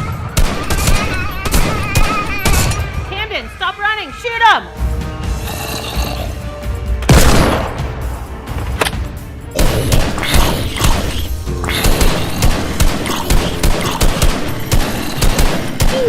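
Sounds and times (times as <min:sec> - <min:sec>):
rapid volleys of gunshots: 0:00.0 - 0:02.7, 0:09.6 - 0:11.1, 0:11.8 - 0:16.0
action music: 0:00.0 - 0:16.0.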